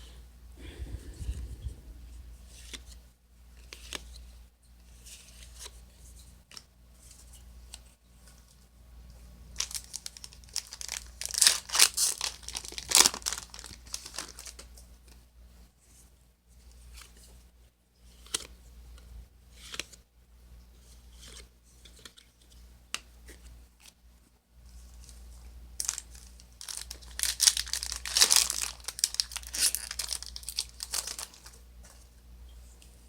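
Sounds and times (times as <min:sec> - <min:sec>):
foil pack crinkling and tearing: 0:09.6 - 0:14.7, 0:25.8 - 0:31.6.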